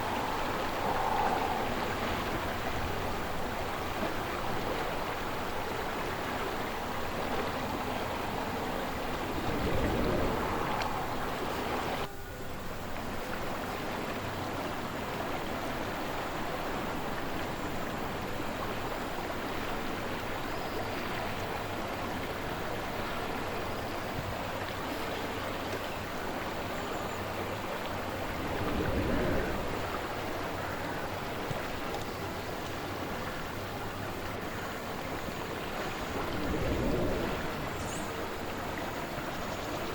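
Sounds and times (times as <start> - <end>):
river water rushing: 0.0 - 12.1, 12.8 - 39.9
wind buffeting microphone: 0.0 - 12.1, 27.3 - 39.9.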